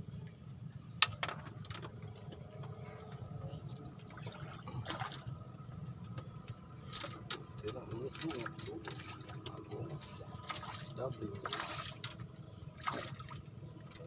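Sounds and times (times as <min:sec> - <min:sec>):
steady low rumble: 0:00.0 - 0:14.0
water splashing and lapping: 0:03.7 - 0:05.6, 0:06.8 - 0:14.0.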